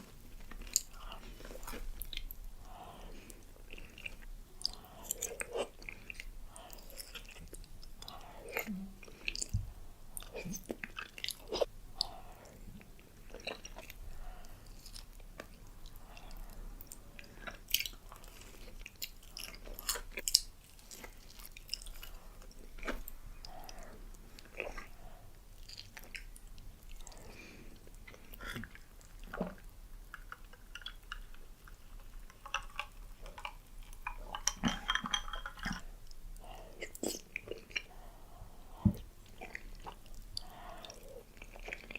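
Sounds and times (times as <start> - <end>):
chewing and biting: 13.2 - 38.0, 38.7 - 41.9.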